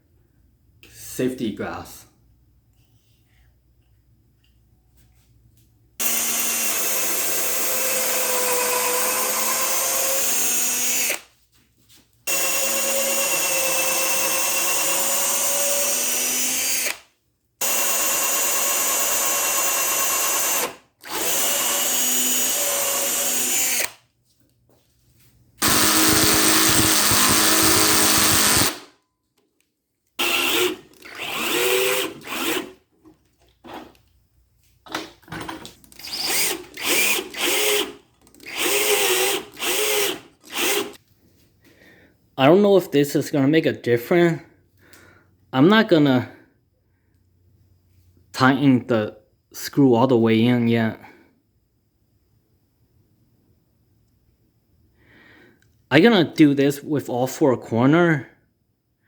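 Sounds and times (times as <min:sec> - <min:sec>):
power drill driving screws: 0:06.0 - 0:11.3, 0:12.3 - 0:24.0, 0:25.6 - 0:28.9, 0:30.2 - 0:32.8, 0:35.9 - 0:41.0.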